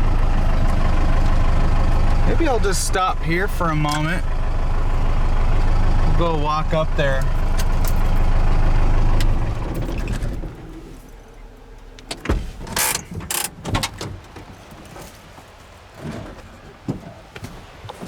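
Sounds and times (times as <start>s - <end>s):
diesel engine winding down: 0.0s - 12.0s.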